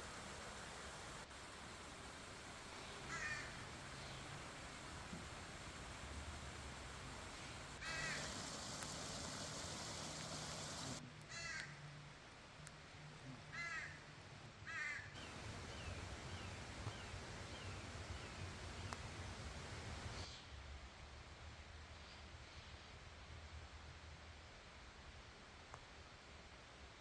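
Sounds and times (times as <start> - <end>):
bird cawing: 0.0 - 11.8, 13.5 - 14.0, 14.7 - 20.2.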